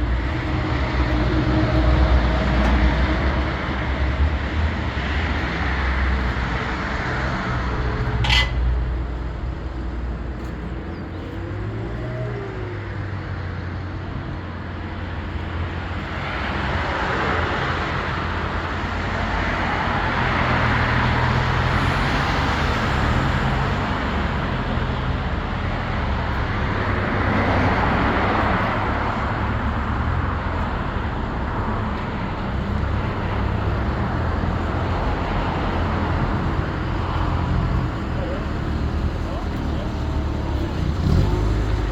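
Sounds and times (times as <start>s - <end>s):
tyre and road noise: 0.0s - 41.9s.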